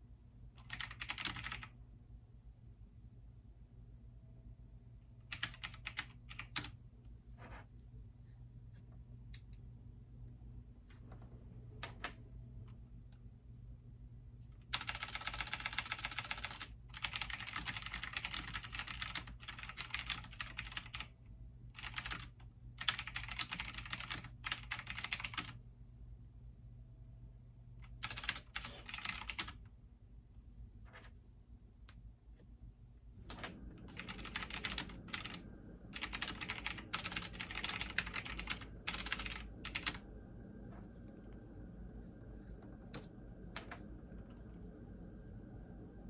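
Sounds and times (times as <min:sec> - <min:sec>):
steady low hum: 0:00.0 - 0:46.0
typing on computer keyboard: 0:00.6 - 0:01.8, 0:05.3 - 0:06.8, 0:14.7 - 0:21.1, 0:21.8 - 0:25.6, 0:27.8 - 0:29.6, 0:33.3 - 0:35.4, 0:36.0 - 0:40.0.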